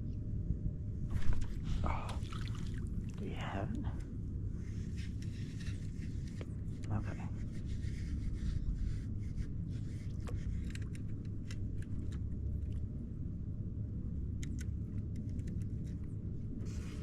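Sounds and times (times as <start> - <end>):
wind rumble on microphone: 0.0 - 17.0
light clicks and taps: 10.0 - 12.8, 14.4 - 16.1.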